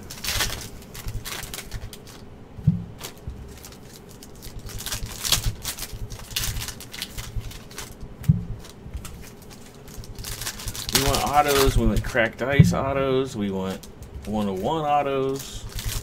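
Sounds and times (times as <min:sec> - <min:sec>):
cards rustling and sliding: 0:00.0 - 0:02.2, 0:08.6 - 0:12.6
dull thump: 0:02.6 - 0:03.5, 0:08.2 - 0:08.6.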